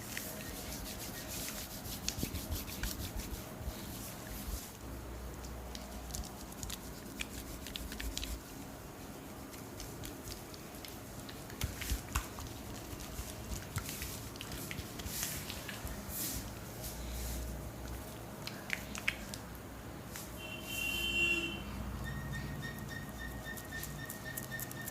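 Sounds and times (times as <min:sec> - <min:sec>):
oiled hands rubbing skin: 0:00.0 - 0:04.8, 0:05.4 - 0:19.4
small clicks and squelches: 0:04.7 - 0:08.4, 0:09.4 - 0:16.0, 0:17.8 - 0:20.3.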